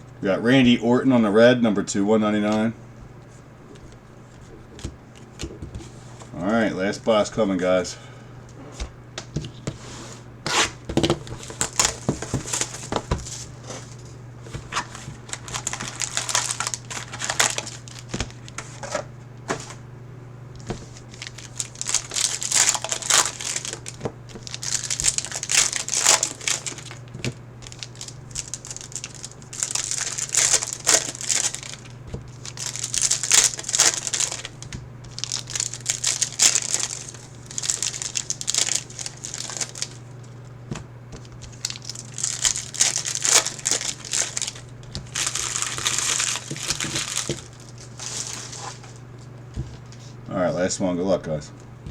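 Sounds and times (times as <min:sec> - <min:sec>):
steady low hum: 0:00.0 - 0:51.9
plastic wrapping tearing and crinkling: 0:10.5 - 0:18.9, 0:20.6 - 0:40.4, 0:41.2 - 0:49.0.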